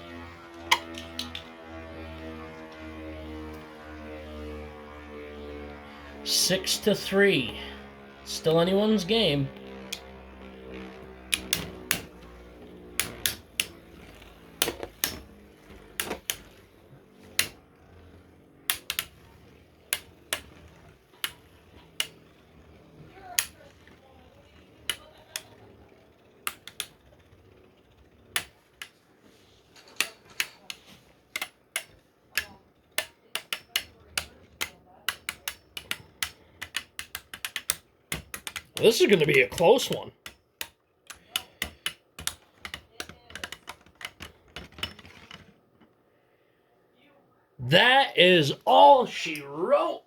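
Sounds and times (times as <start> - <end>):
spinning tops clacking together: 9.6 - 29.0.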